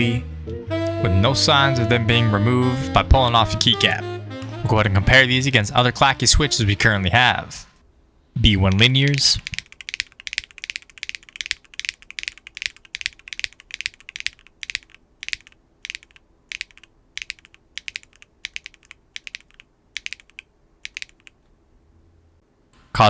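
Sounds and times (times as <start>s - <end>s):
clacky mechanical keyboard typing: 8.7s - 21.4s.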